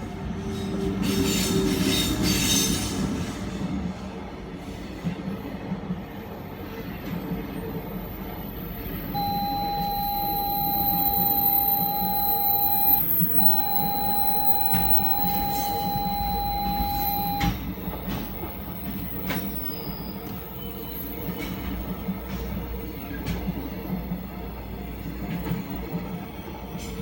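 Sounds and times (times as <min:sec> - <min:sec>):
train whistle blasts: 0:09.2 - 0:17.5.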